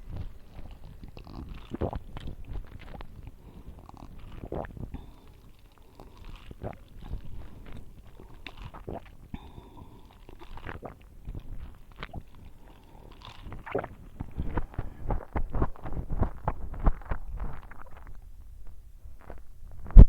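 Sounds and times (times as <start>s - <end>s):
chewing and mouth sounds: 0.0s - 18.2s.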